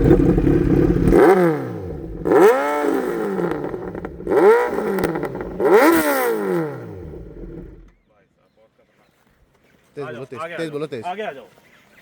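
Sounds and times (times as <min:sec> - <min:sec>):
motorcycle engine revving: 0:00.0 - 0:08.0.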